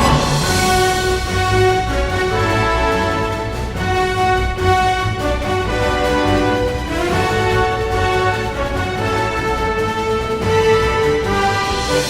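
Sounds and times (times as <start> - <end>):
background music with held notes: 0.0 - 12.0
steady bass: 0.0 - 12.0.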